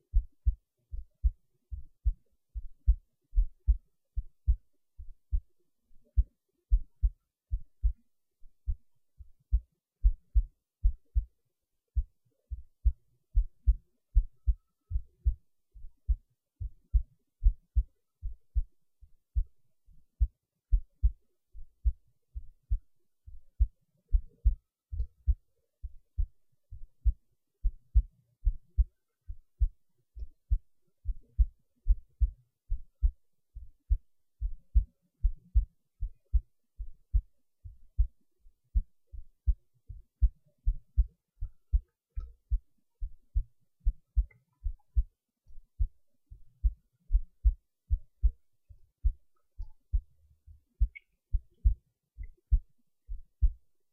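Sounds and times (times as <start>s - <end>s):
heartbeat thumps: 0.1s - 11.3s, 12.0s - 45.1s, 45.7s - 53.6s.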